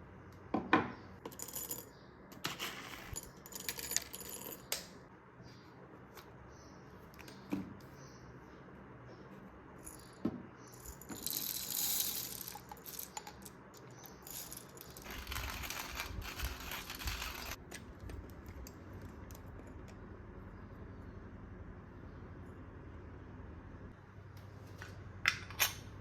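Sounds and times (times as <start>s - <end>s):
faint low hum: 0.0s - 26.0s
small hard objects rattling: 10.7s - 17.6s.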